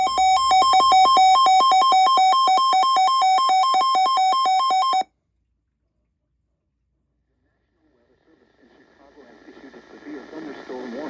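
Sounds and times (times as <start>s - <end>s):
electronic two-tone alert: 0.0s - 5.0s.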